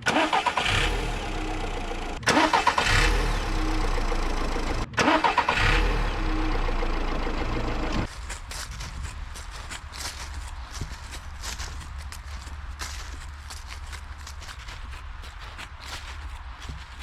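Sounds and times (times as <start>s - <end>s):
vehicle engine running: 0.0s - 8.1s.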